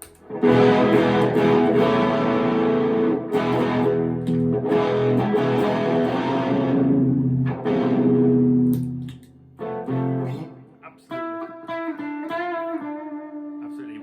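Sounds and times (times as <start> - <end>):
distorted electric guitar chords: 0.0 - 13.6.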